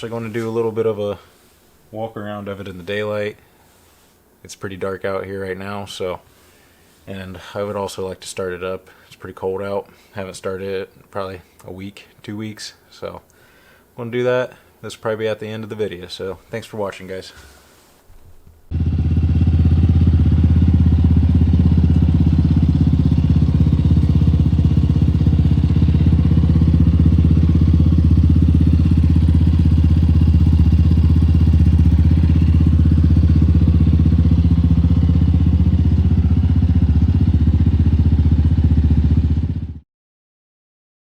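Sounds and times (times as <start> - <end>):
engine idling: 18.7 - 39.7.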